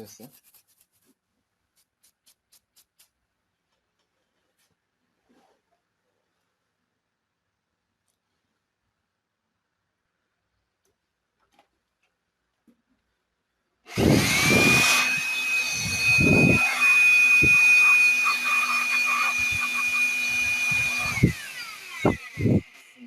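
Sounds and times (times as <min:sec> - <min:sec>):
rushing air: 0:13.9 - 0:16.8
electric blower motor whine: 0:13.9 - 0:23.0.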